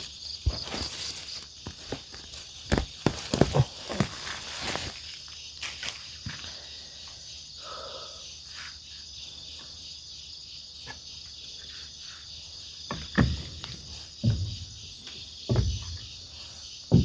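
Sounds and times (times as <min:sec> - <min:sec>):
insects chirping: 0:00.0 - 0:17.0
heavy footsteps on ground: 0:13.2 - 0:16.2.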